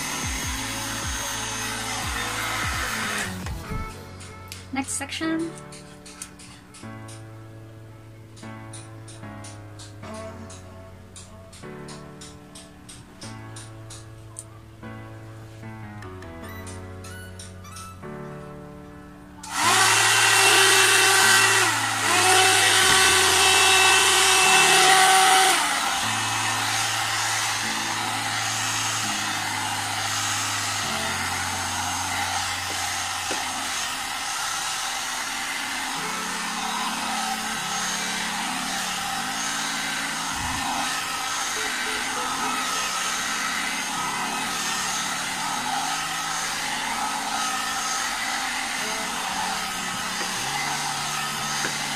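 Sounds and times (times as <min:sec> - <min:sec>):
hair dryer brush blowing: 0:00.0 - 0:04.8, 0:19.4 - 0:51.9.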